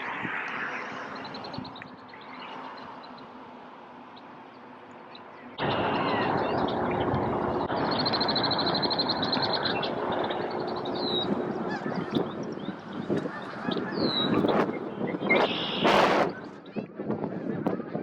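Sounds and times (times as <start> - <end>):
bird trilling: 5.6 - 16.4
loud steady rushing noise: 5.6 - 16.8.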